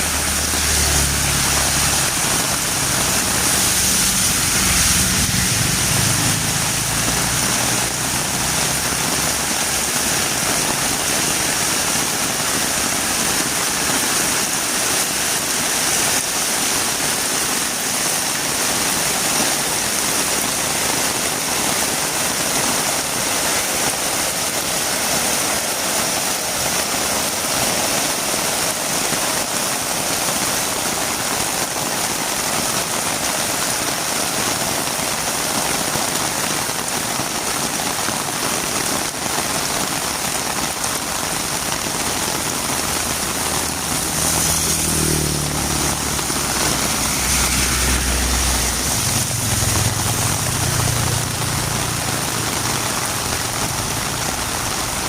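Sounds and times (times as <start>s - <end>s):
vehicle engine humming: 0.0s - 10.0s, 41.8s - 55.0s
heavy rain: 0.0s - 55.0s.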